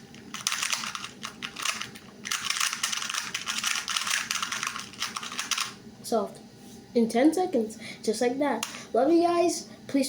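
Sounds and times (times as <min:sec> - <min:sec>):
puzzle cube plastic clicks: 0:00.2 - 0:05.7.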